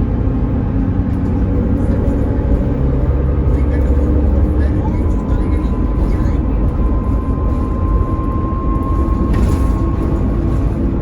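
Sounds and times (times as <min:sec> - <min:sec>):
bus engine rumble: 0:00.0 - 0:11.0
gearbox whine: 0:00.0 - 0:11.0.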